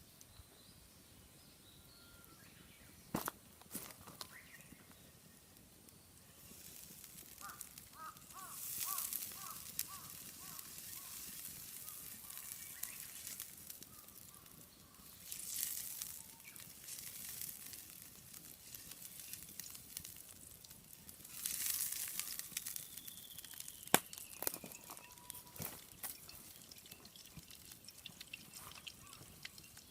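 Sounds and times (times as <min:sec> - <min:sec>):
outdoor ambience: 0:00.0 - 0:29.9
bursts of hiss: 0:06.4 - 0:14.3.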